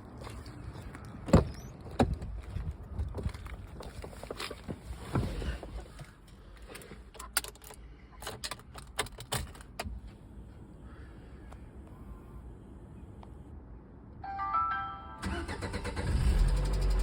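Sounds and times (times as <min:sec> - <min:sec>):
car keys jangling: 0:07.0 - 0:09.9.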